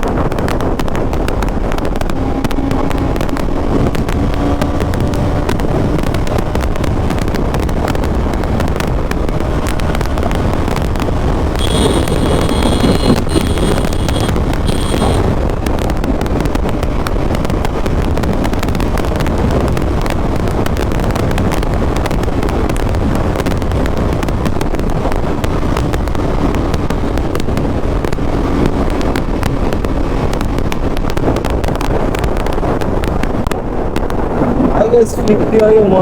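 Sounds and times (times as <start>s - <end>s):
wind rush on microphone: 0.0s - 36.0s
motorcycle engine running: 7.8s - 24.2s.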